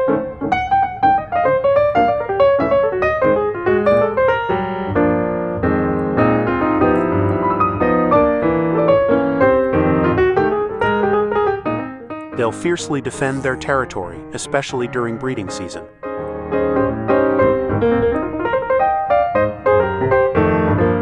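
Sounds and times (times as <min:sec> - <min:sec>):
piano music: 0:00.0 - 0:21.0.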